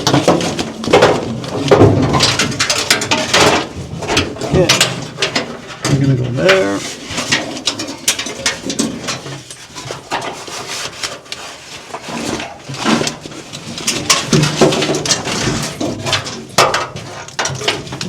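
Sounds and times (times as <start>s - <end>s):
wiring harness clicks and knocks: 0.0s - 6.6s.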